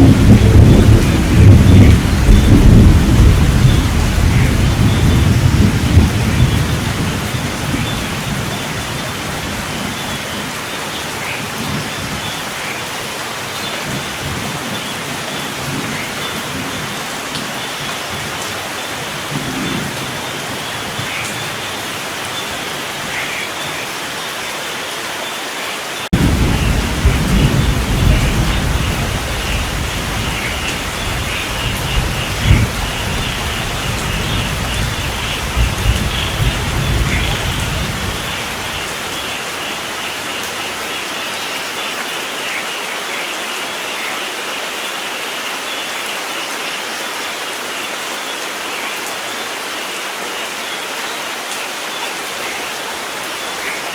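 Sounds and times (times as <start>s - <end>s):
thunder rumbling: 0.0s - 10.0s, 26.1s - 39.4s
heavy rain: 0.0s - 53.9s.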